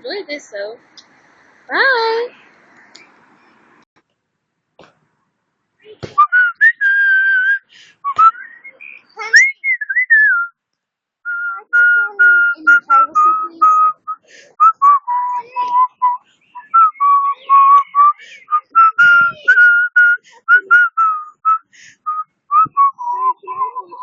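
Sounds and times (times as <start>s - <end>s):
person whistling a tune: 6.1s - 10.5s, 11.3s - 24.0s.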